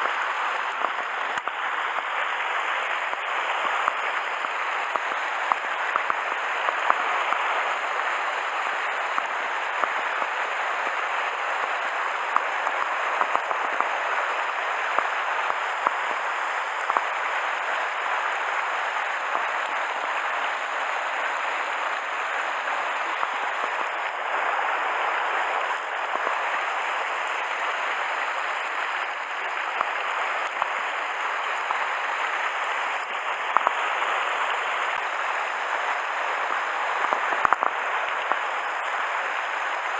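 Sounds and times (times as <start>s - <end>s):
stream rushing over rocks: 0.0s - 39.9s
small clicks: 37.0s - 38.4s.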